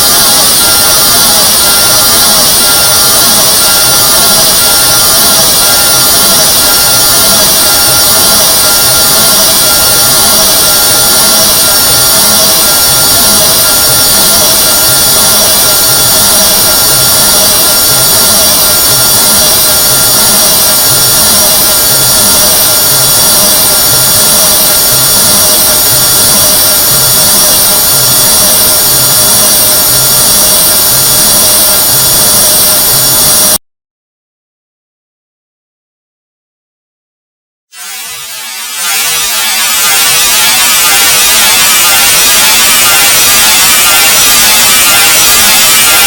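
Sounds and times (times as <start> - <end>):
shrill tones: 37.7 - 46.0
harsh loud hissing: 37.8 - 46.0.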